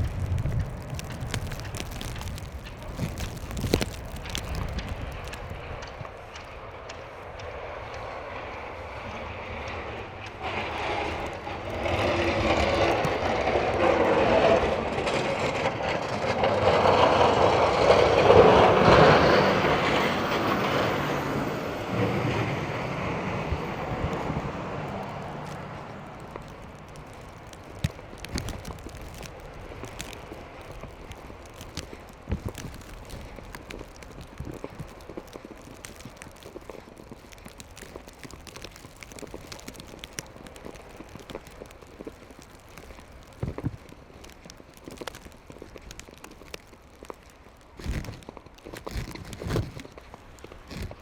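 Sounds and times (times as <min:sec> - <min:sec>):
road vehicle passing: 0:00.0 - 0:32.0.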